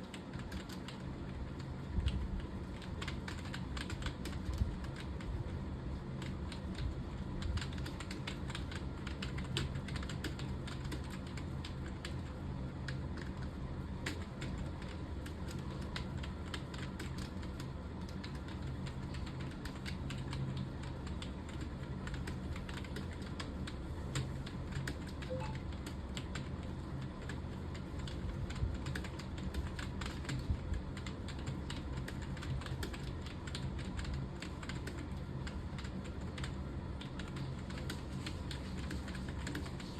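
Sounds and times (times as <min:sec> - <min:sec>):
low steady hum: 0:00.0 - 0:39.9
typing on computer keyboard: 0:00.0 - 0:39.9.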